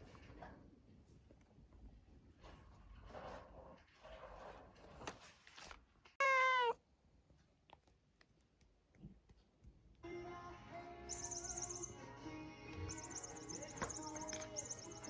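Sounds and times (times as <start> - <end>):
cat meowing: 6.2 - 6.8.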